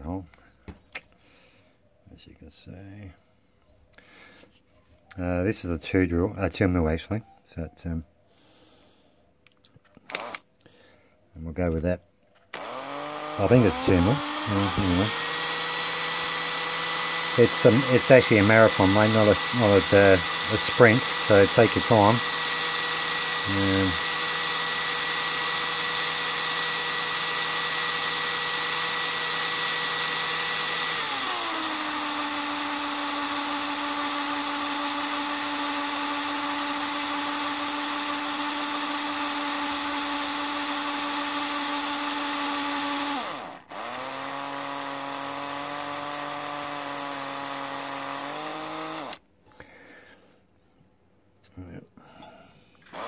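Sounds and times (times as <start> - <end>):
electric drill boring into metal: 10.0 - 10.4, 12.4 - 49.2.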